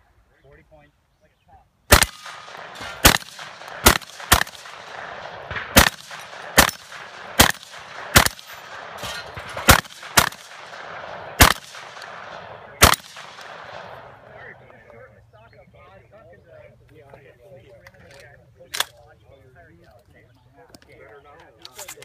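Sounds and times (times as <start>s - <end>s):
shotgun shots with echo: 1.9s - 14.4s.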